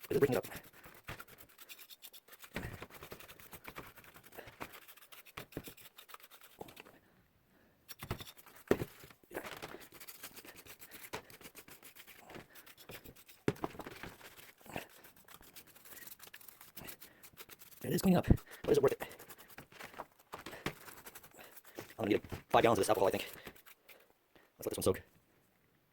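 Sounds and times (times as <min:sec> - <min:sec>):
paint brush scrubbing: 0:00.0 - 0:06.9, 0:07.9 - 0:24.1.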